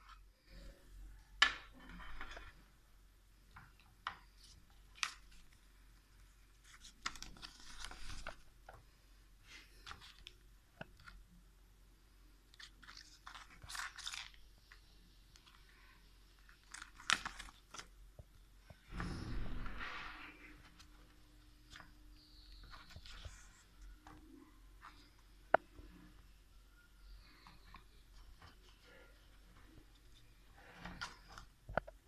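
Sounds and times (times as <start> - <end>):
packaging rustling: 16.4 - 17.9.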